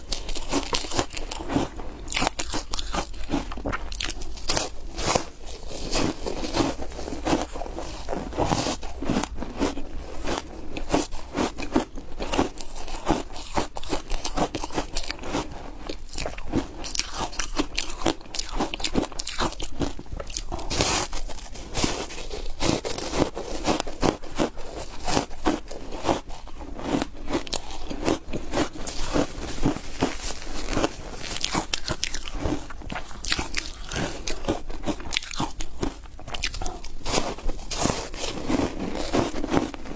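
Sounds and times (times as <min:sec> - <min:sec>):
chewing and crunching ice: 0:00.0 - 0:39.9.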